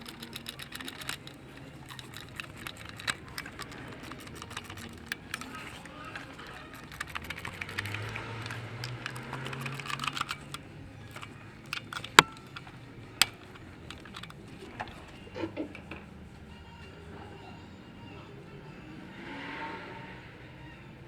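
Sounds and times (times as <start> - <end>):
metallic clicks of hand tools: 0.0 - 15.0.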